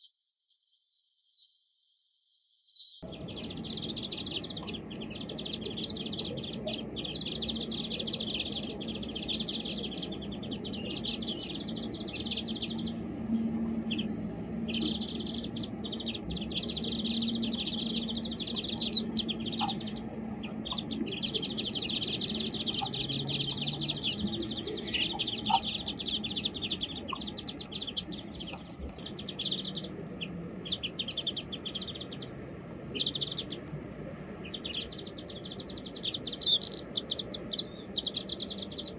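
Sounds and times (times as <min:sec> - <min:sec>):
bird twittering warble: 0:02.5 - 0:38.9.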